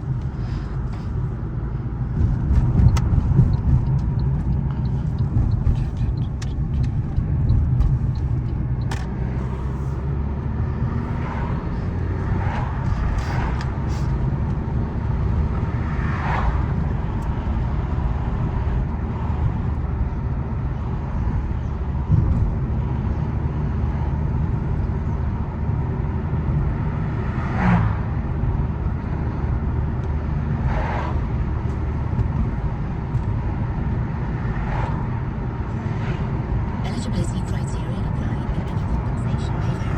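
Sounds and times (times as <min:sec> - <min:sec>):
car road and engine rumble: 0:00.0 - 0:39.9.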